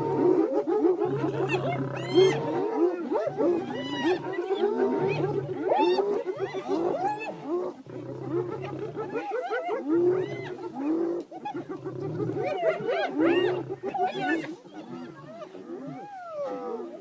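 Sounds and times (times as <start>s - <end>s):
wild animals crying: 1.1s - 7.2s.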